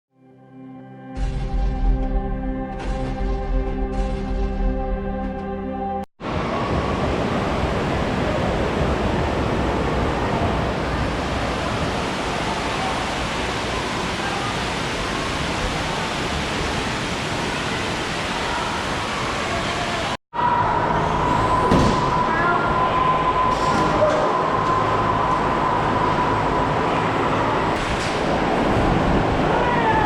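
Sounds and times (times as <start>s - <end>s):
water rushing down slide: 6.2s - 20.2s.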